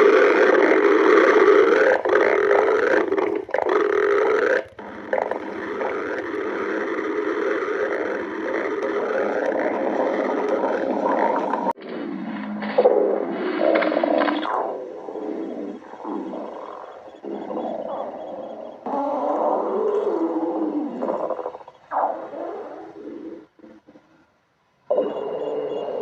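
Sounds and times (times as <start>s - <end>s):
stomach growling: 0.0s - 24.3s, 24.9s - 26.0s.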